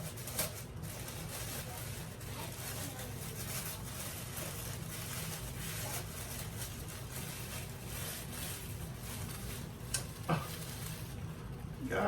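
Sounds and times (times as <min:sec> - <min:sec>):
steady low hum: 0:00.0 - 0:12.0
wrapping rustling and crinkling: 0:00.0 - 0:12.0.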